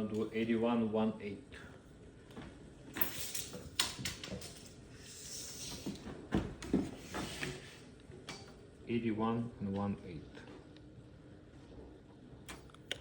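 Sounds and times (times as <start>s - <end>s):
short scraping hiss: 5.0s - 5.8s.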